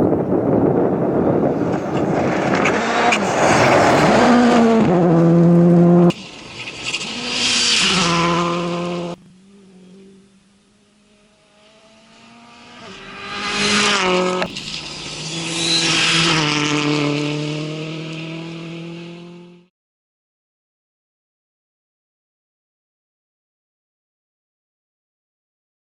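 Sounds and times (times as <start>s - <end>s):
rally cars passing at speed: 0.0s - 10.2s, 10.8s - 19.7s
engines revving through gear changes: 1.6s - 19.7s.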